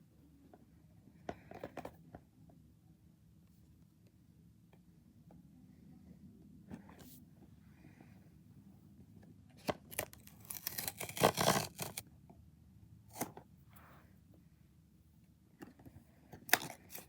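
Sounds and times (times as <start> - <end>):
packaging being torn open: 9.8 - 12.0.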